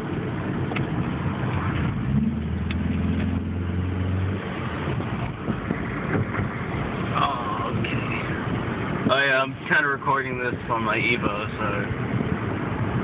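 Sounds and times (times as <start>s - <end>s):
road noise: 0.0s - 13.0s
wind noise: 0.3s - 9.2s, 10.4s - 13.0s.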